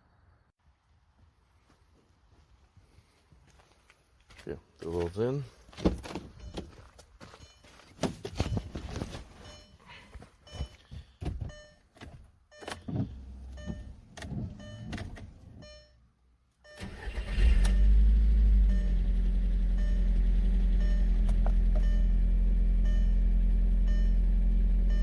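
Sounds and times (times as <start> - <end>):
car engine starting and idling: 12.6 - 15.8, 16.6 - 25.0.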